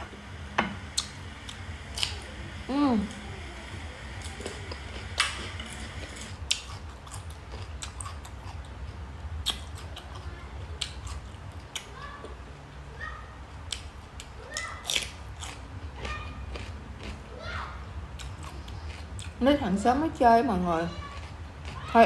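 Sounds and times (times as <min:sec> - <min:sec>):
low hum: 0:00.0 - 0:11.6
chewing and tearing chicken: 0:04.0 - 0:12.4, 0:13.6 - 0:19.4, 0:20.9 - 0:22.0.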